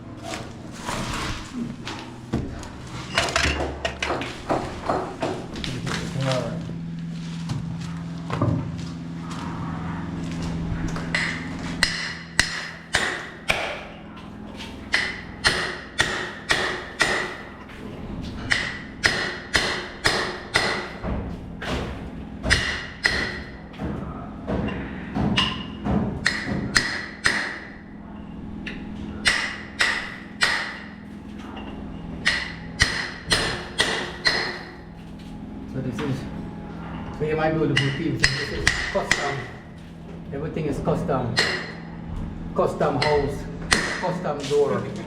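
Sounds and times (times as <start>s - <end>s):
hammer striking chisel: 11.1s - 13.9s, 14.9s - 17.5s, 18.5s - 21.0s, 22.4s - 23.6s, 24.5s - 27.8s, 29.2s - 31.0s, 32.2s - 34.7s, 37.8s - 39.5s, 41.4s - 41.8s, 43.0s - 44.2s.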